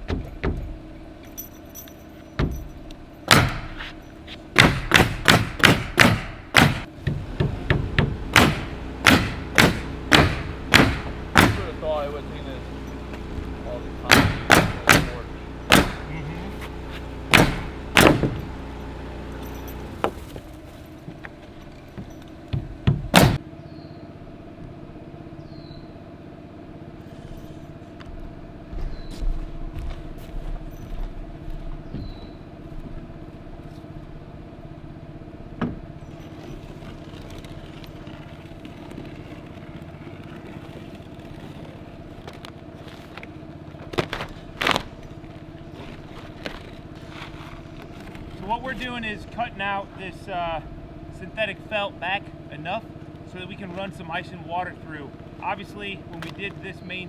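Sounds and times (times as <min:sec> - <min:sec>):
knocks and bang: 0:00.0 - 0:01.1, 0:02.4 - 0:12.2, 0:12.8 - 0:18.8, 0:19.4 - 0:23.4, 0:35.6 - 0:35.9
small engine droning: 0:00.0 - 0:57.0
hammer driving nails into wood: 0:03.3 - 0:11.8, 0:13.4 - 0:18.6, 0:22.5 - 0:23.4.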